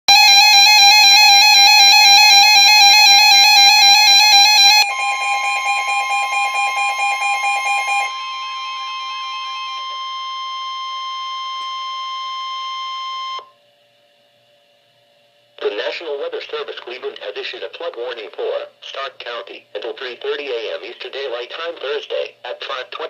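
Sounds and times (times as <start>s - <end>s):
warbling electronic alarm: 0.1s - 13.5s
steady alert tone: 0.2s - 10.7s.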